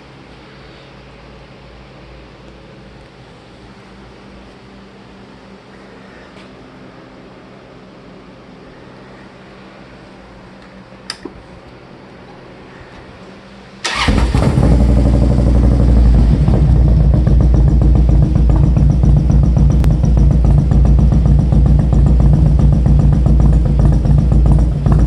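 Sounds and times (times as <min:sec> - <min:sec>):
motorcycle engine starting and running: 0:13.8 - 0:25.0.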